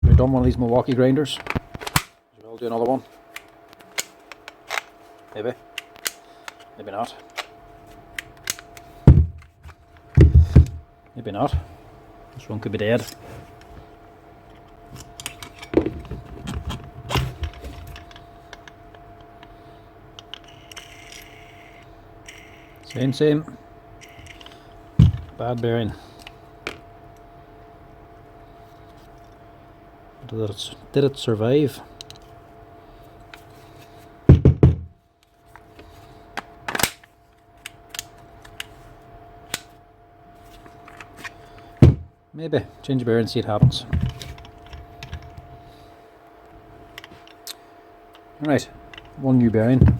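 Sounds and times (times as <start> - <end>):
faint steady hum: 0.0 - 49.9
heavy knocks on workbench: 9.1 - 9.4, 34.3 - 34.9, 41.8 - 42.1.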